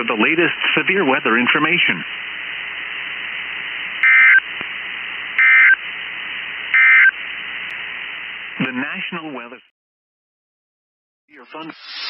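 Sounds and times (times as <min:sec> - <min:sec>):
radio hiss: 0:00.0 - 0:09.7, 0:11.3 - 0:12.0
warbling digital data tones: 0:11.4 - 0:12.0.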